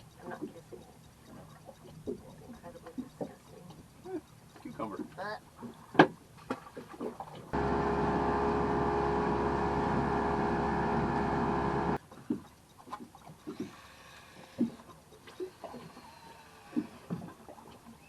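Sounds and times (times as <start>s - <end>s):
boat motor running: 7.6s - 12.0s.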